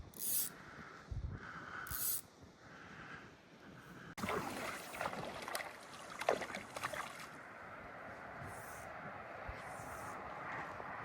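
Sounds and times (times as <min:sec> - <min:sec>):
water splashing: 0:04.2 - 0:07.5.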